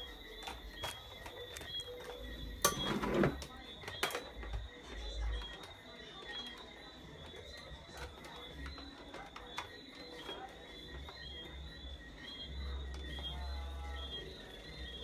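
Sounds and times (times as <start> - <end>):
small parts clicking and tapping: 0.0 - 11.8.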